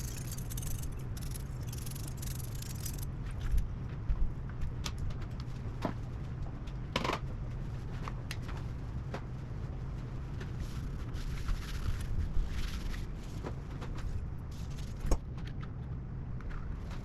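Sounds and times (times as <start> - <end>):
small parts clicking and scraping: 0.0 - 3.6
low steady hum: 0.0 - 17.0.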